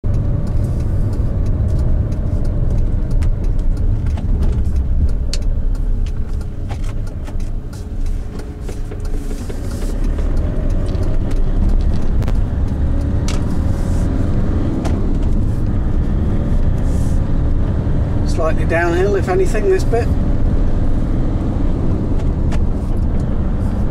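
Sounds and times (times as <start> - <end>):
car engine and tyres rumbling: 0.0 - 23.9
light clicks and rattles: 0.1 - 13.8.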